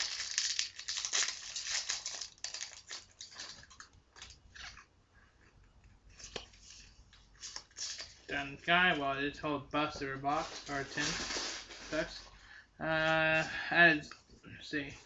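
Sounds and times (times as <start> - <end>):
foil wrapper crinkling: 0.0 - 4.4.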